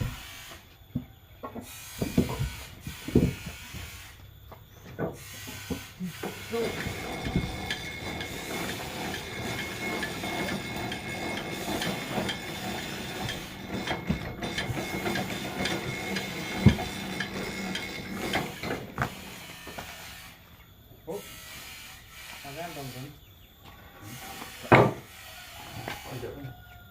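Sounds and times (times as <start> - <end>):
sawmill machinery clattering: 5.0 - 20.4, 24.1 - 26.3.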